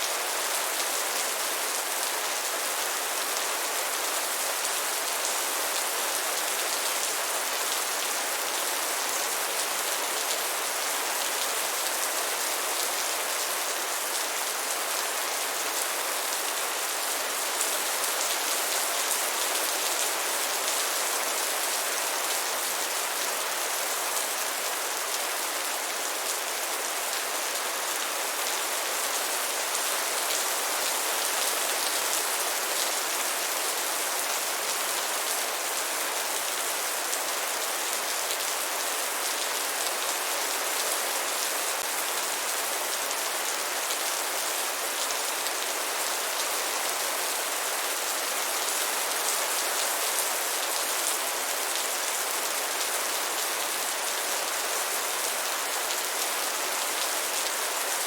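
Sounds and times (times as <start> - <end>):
steady rain falling: 0.0 - 58.0.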